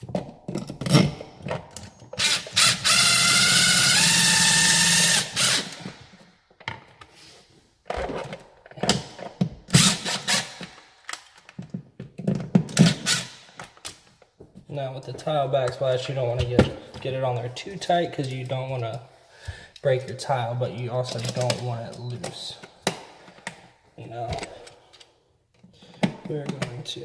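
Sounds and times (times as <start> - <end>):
power drill driving screws: 2.2 - 6.0, 9.8 - 10.8, 12.8 - 13.4.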